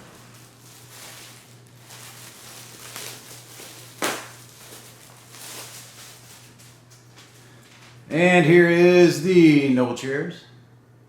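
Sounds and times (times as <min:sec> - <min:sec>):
rustling and handling noise: 0:00.0 - 0:08.1
steady low hum: 0:00.0 - 0:11.0.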